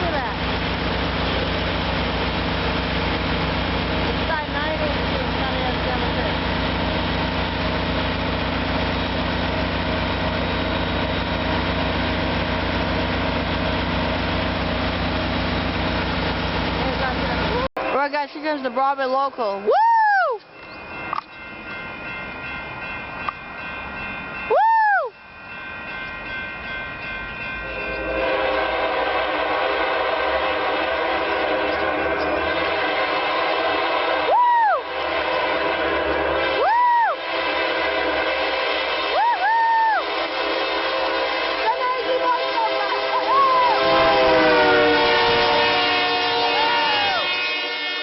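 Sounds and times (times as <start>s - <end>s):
diesel locomotive engine idling: 0.0s - 47.9s
train rumble: 0.0s - 48.0s
locomotive horn: 27.6s - 48.0s.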